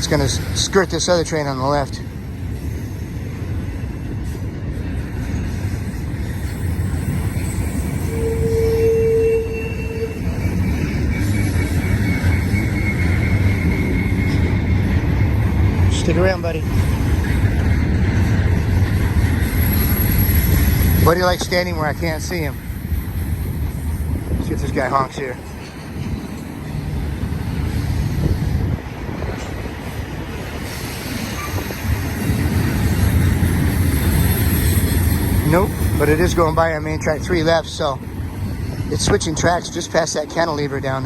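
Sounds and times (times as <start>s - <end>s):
freight train rumbling past: 0.0s - 41.0s
faint high thin tone: 8.0s - 10.3s
short steady tone: 8.0s - 10.4s.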